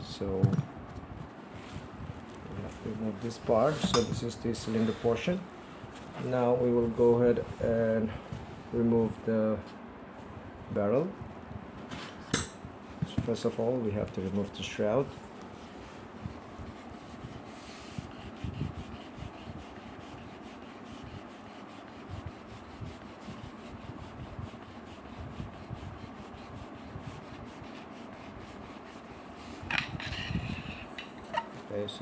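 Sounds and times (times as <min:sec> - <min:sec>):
metal parts rubbing: 0:29.6 - 0:31.5.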